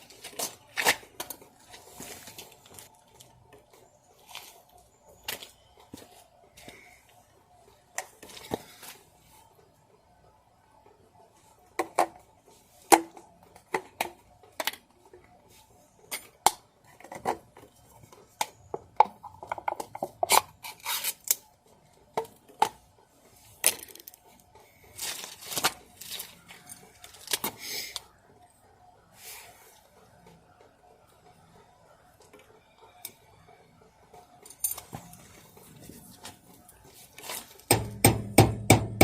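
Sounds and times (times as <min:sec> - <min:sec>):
scraping or tearing sounds: 0:20.3 - 0:21.4, 0:24.9 - 0:27.5.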